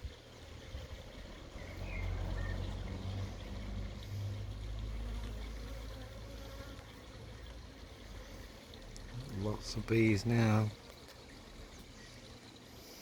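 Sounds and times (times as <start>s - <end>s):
bees buzzing faintly: 0.0s - 13.0s.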